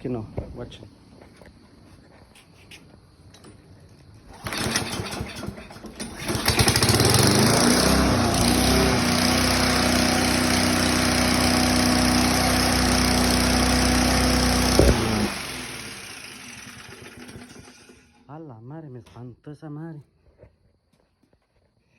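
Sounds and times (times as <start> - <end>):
lawn mower engine starting: 4.2 - 18.3.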